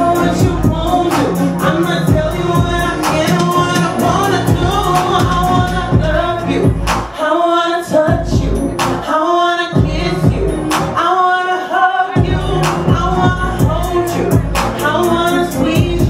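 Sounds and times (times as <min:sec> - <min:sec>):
song with sung vocals: 0:00.0 - 0:16.0.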